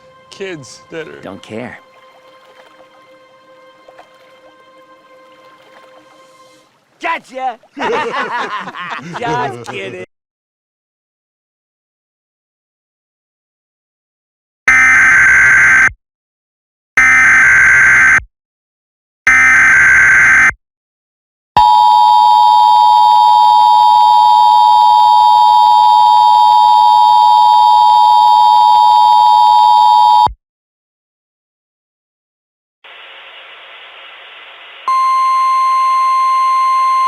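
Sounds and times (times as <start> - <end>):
steady dual-tone alert signal: 34.9 - 37.0.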